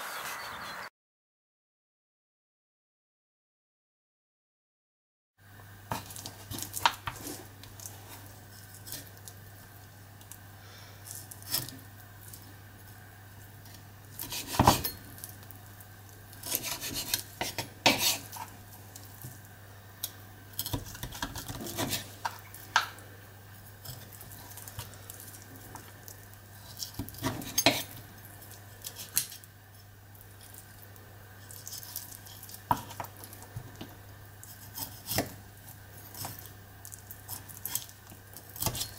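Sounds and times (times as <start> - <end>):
cutlery and dishes clinking: 14.3 - 15.1.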